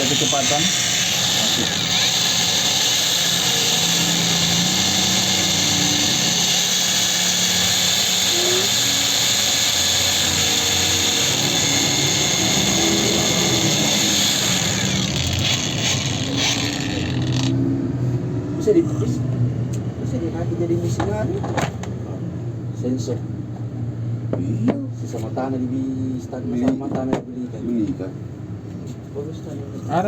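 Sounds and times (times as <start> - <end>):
angle grinder whining: 0.0 - 17.6.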